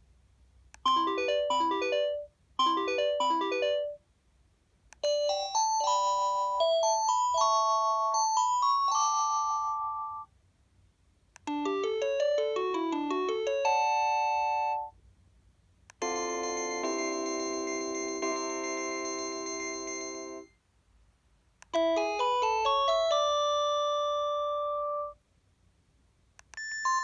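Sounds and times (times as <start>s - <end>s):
phone ringtone melodies: 0.9s - 4.0s, 5.0s - 10.3s, 11.5s - 14.9s, 16.0s - 20.5s, 21.8s - 25.2s, 26.6s - 27.0s.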